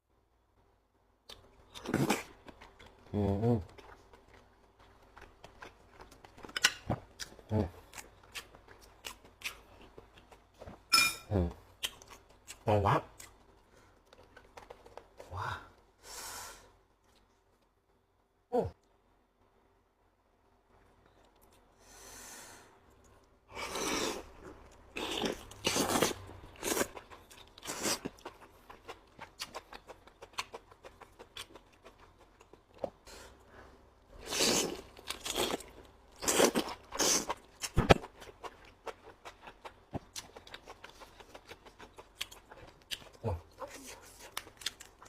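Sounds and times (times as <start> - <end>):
person crunching and chewing: 23.5 - 33.0, 34.2 - 43.3, 44.1 - 45.0.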